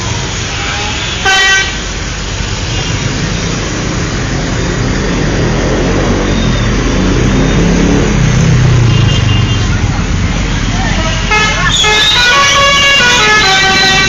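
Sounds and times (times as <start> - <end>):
bus horn toot: 0.5 - 1.8, 10.9 - 14.0.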